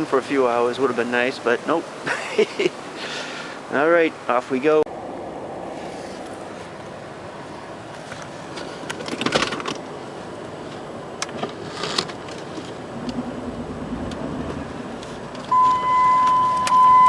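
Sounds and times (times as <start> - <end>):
keys and controls clicking and rattling: 8.1 - 9.8
seatbelt warning chime: 15.5 - 17.0.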